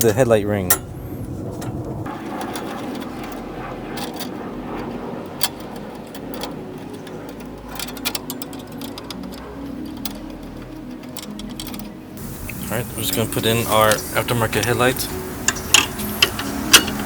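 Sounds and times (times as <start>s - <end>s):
steady background hum: 0.0s - 17.0s
hand tool clicks and taps: 15.4s - 17.0s.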